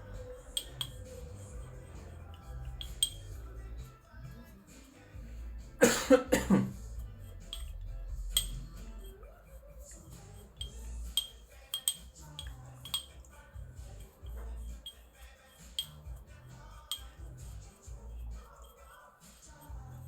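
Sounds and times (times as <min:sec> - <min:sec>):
glassware clinking: 0:00.0 - 0:03.4, 0:05.8 - 0:09.3, 0:10.2 - 0:16.2, 0:16.8 - 0:17.7
background music: 0:00.0 - 0:20.0
person coughing: 0:05.8 - 0:06.9.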